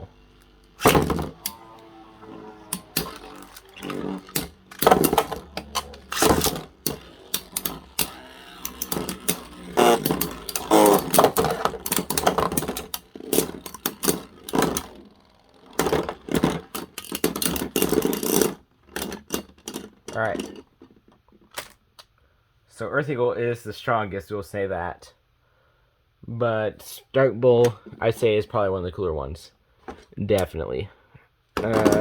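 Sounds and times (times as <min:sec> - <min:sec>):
spinning tops clacking together: 0:00.0 - 0:20.7, 0:31.6 - 0:32.0
spinning tops whirring: 0:00.0 - 0:20.8, 0:31.6 - 0:32.0.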